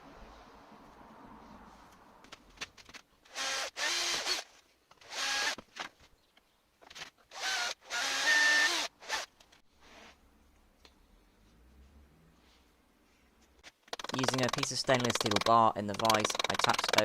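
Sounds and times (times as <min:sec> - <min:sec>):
power drill running: 0:03.3 - 0:05.6, 0:07.3 - 0:09.3.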